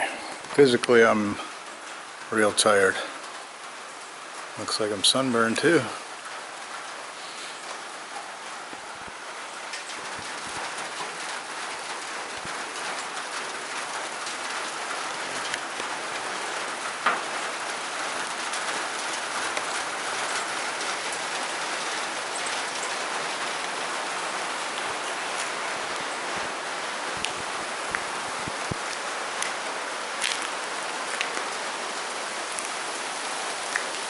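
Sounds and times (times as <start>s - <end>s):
rain on a tin roof: 0.0s - 34.0s.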